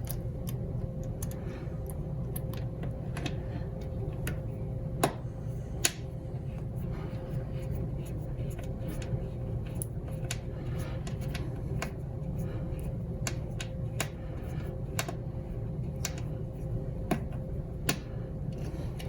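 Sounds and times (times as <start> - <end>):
steady low hum: 0.0 - 19.0
light clicks and taps: 12.8 - 14.2, 15.9 - 16.4.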